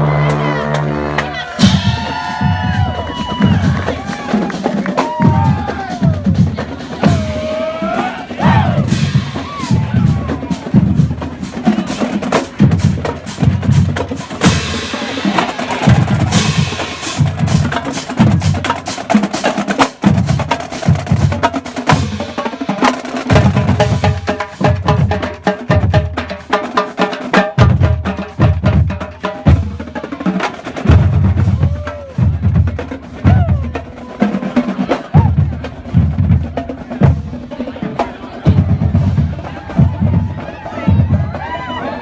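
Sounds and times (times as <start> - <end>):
bass drum beat: 0.0 - 18.8, 30.9 - 33.9.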